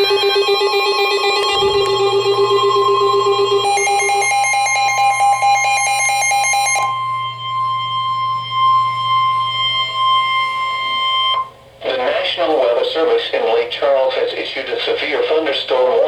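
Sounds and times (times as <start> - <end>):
pulsing electronic alert beeps: 0.0 - 11.5
steady warning tone: 0.0 - 16.0.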